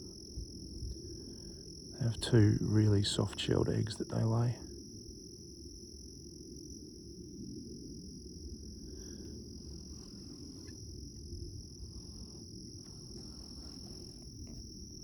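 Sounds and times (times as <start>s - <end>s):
night insects chorus: 0.0s - 15.0s.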